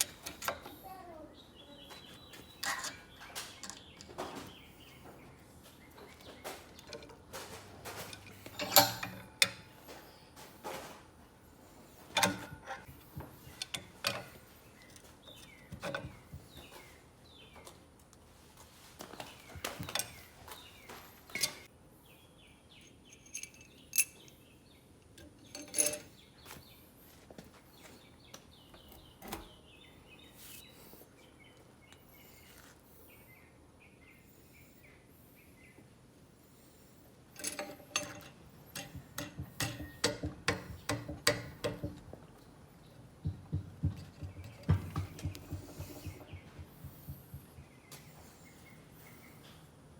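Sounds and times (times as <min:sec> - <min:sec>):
tools and metal parts clicking: 0:00.0 - 0:00.8, 0:02.6 - 0:04.3, 0:06.1 - 0:09.8, 0:12.1 - 0:16.4, 0:21.3 - 0:21.7, 0:22.8 - 0:26.3, 0:37.3 - 0:42.2, 0:43.9 - 0:47.6.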